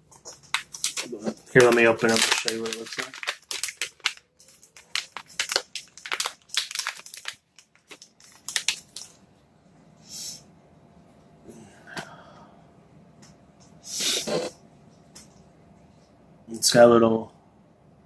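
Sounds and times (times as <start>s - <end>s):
plastic packet crinkling: 0.1s - 9.2s
plastic rustle: 0.1s - 9.2s.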